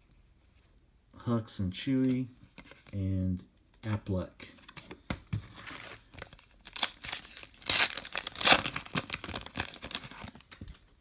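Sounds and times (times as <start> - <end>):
wrapper crinkling and tearing: 5.6 - 10.6.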